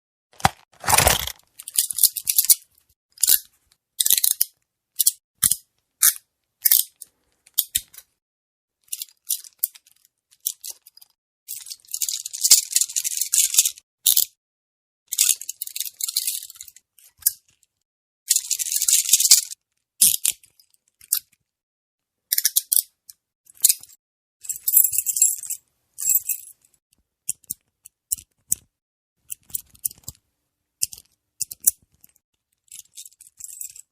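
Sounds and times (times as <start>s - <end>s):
handcuffs clicking and rattling: 0.8s - 2.6s, 3.2s - 8.1s, 8.8s - 14.3s, 15.1s - 17.7s, 18.3s - 21.4s, 22.3s - 26.7s, 29.3s - 30.2s, 30.8s - 33.9s.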